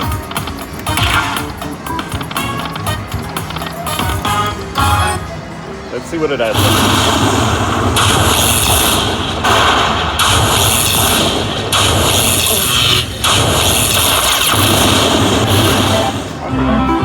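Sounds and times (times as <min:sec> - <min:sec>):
slot machine bonus sounds: 0:00.0 - 0:05.4.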